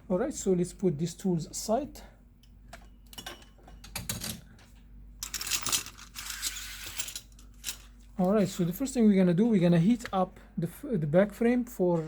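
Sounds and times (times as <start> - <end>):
rustling and scraping: 5.2 - 8.6.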